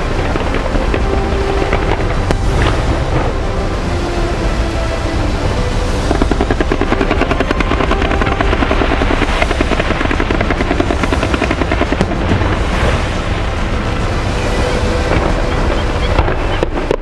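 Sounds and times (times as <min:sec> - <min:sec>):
fireworks crackling pops: 0:00.0 - 0:03.4, 0:06.0 - 0:13.3, 0:16.1 - 0:17.0
fireworks low rumble: 0:00.0 - 0:17.0
fireworks bangs: 0:06.0 - 0:13.8.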